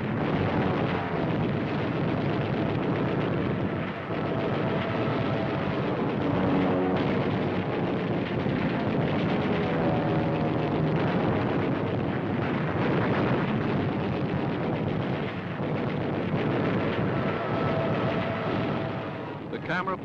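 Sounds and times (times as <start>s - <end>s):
faint musical tones: 0.0s - 12.1s, 16.3s - 20.0s
aircraft engine roar: 0.0s - 20.0s
explosions: 0.0s - 20.0s.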